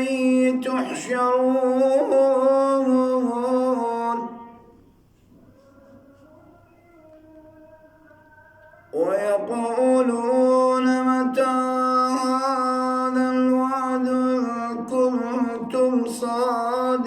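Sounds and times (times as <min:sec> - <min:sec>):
man chanting: 0:00.0 - 0:17.0.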